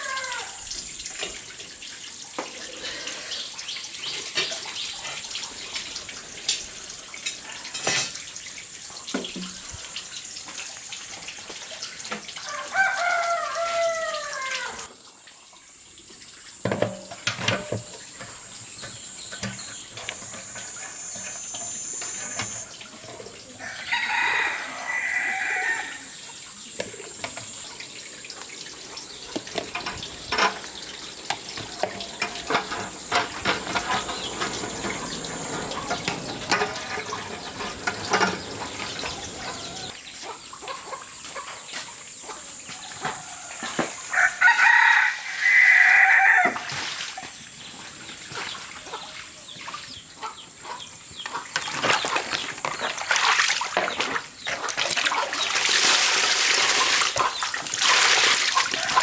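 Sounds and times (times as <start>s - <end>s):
rooster crowing: 0.0s - 0.7s, 12.4s - 14.9s, 23.4s - 26.2s, 39.0s - 40.0s, 42.7s - 46.9s, 58.5s - 59.0s.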